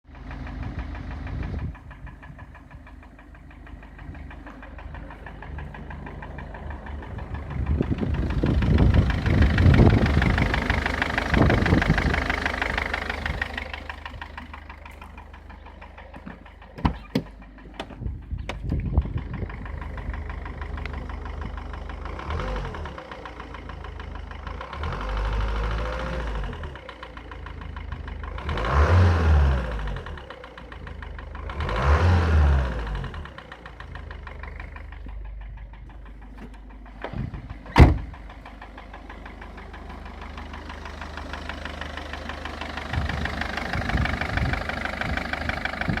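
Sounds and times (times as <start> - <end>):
engine idling with knock: 0.1 - 46.0
engine revving: 4.5 - 16.2, 19.0 - 35.1.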